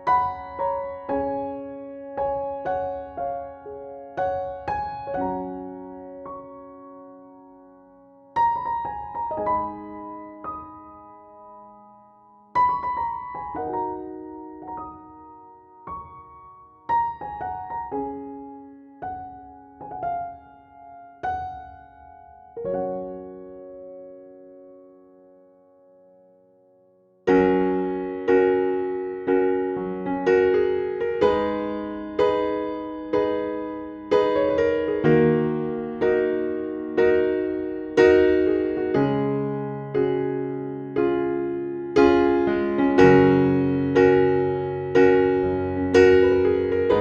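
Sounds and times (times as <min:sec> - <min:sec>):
slow soft piano music: 0:00.0 - 0:47.0.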